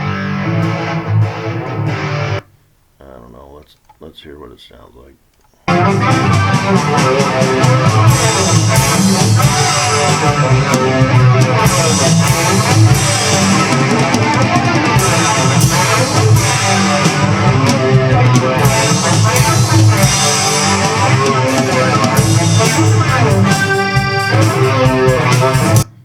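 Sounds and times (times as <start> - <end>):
rock music with guitar and drums: 0.0 - 2.4, 5.7 - 26.0.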